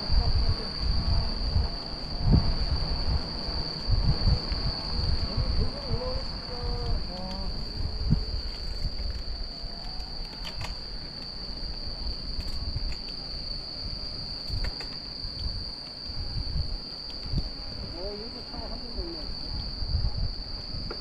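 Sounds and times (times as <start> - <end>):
insect chorus shrilling: 0.0 - 21.0
wind and ride noise: 0.0 - 21.0.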